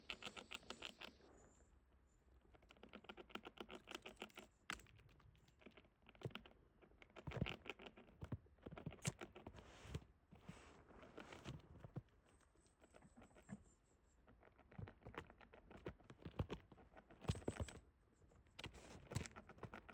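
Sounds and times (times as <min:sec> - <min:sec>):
squirrel gnawing a bone: 0:00.0 - 0:01.3, 0:02.4 - 0:09.6, 0:11.0 - 0:19.9.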